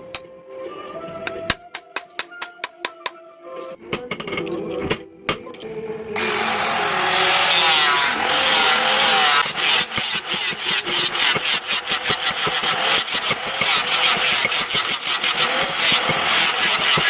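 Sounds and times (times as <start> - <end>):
power tool rasping on steel: 6.2 - 17.0.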